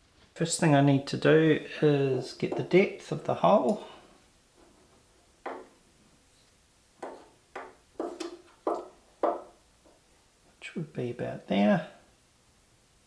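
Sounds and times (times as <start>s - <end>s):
tool knocking on wood: 2.1s - 2.8s, 5.4s - 5.8s, 7.0s - 9.6s.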